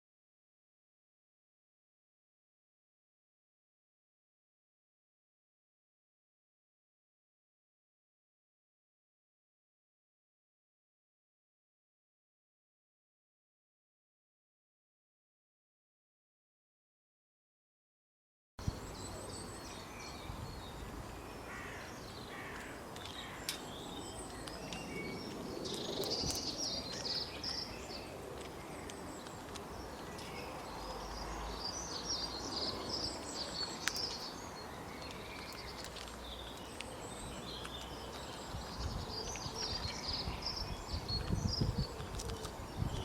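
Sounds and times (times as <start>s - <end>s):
birds chirping: 18.6s - 43.0s
natural background noise: 18.6s - 43.0s.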